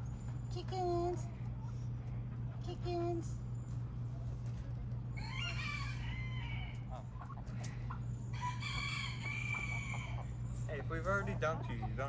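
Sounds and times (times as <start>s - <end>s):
rooster crowing: 5.1s - 7.0s, 8.3s - 10.4s.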